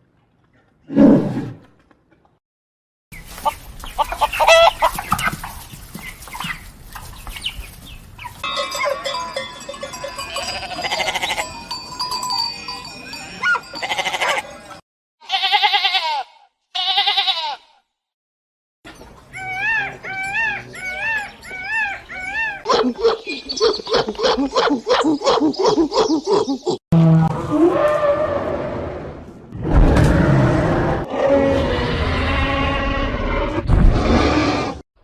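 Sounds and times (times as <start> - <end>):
animal calls: 18.9 - 26.8.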